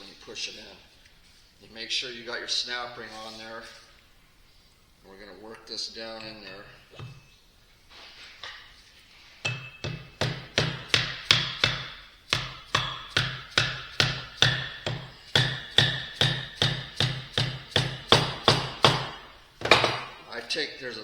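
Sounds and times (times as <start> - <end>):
hammer tapping on metal: 9.4 - 20.2.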